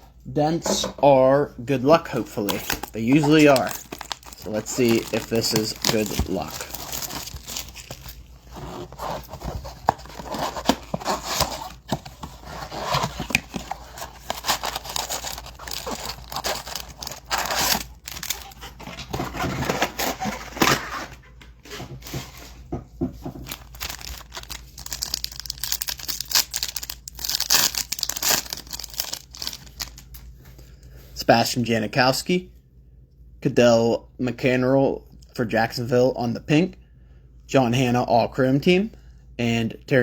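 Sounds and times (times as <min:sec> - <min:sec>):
wrappers ripping and crinkling: 0:02.3 - 0:12.0, 0:12.6 - 0:18.7, 0:23.5 - 0:30.1.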